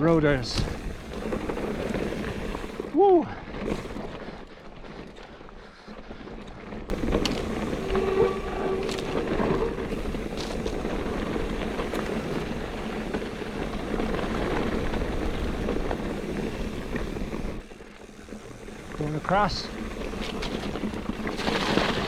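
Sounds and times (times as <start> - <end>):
tyre and wind rush: 0.0 - 22.0
brief squeal: 7.8 - 9.8.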